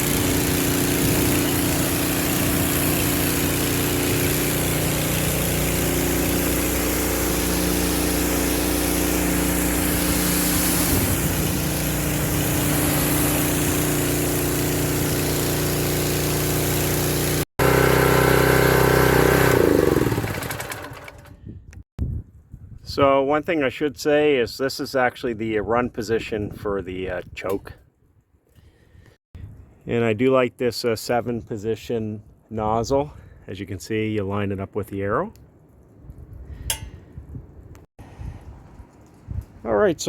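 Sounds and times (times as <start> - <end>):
pressure washer engine running: 0.0 - 21.3.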